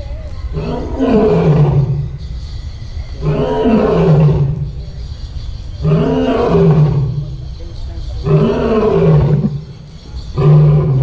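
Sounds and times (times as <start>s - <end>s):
lion roaring: 0.5s - 2.2s, 3.2s - 4.7s, 5.8s - 7.4s, 8.2s - 11.0s.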